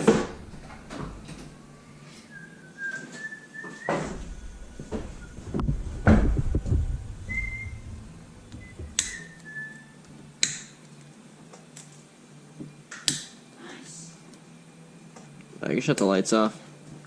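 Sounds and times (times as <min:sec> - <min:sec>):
heavy thump with low rumble: 0:00.0 - 0:01.9, 0:03.9 - 0:09.4
person whistling: 0:02.0 - 0:05.5, 0:06.9 - 0:10.1.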